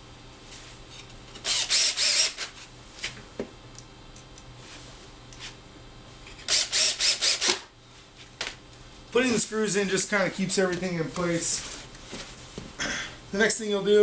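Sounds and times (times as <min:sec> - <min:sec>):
cordless drill driving screws: 0:01.4 - 0:02.5, 0:06.4 - 0:07.7.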